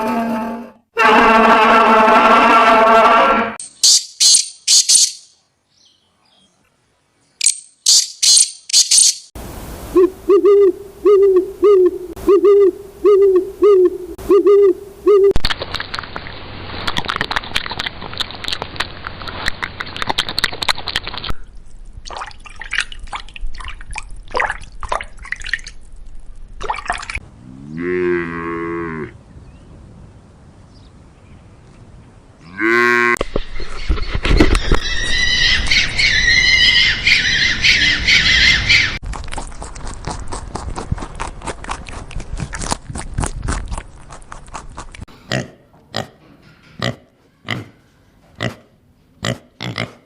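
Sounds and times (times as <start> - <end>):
low rising animal call: 9.9 - 15.4, 27.3 - 29.2
hooting animal call: 10.0 - 15.4, 32.5 - 39.0.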